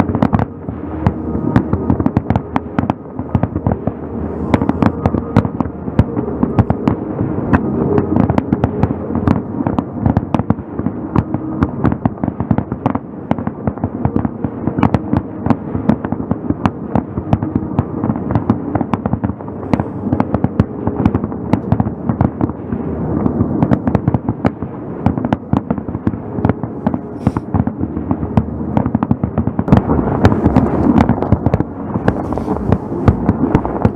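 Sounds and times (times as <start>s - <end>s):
low rumble: 0.0s - 33.9s
fireworks bursting: 29.7s - 33.9s.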